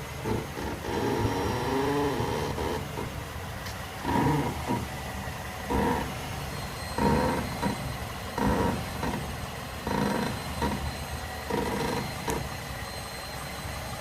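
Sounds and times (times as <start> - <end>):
car suspension creaking: 0.0 - 12.6.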